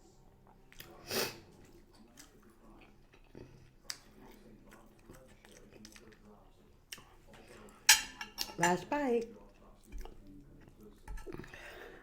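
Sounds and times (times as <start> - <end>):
person chewing with wet clicks: 0.4 - 7.8, 9.4 - 11.5.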